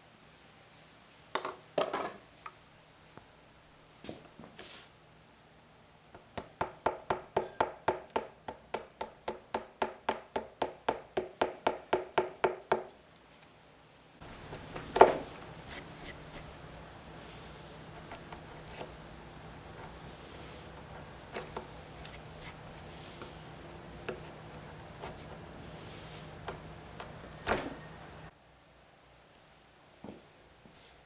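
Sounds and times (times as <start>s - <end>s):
hammer striking: 14.2s - 28.3s
steady low hum: 14.2s - 28.3s.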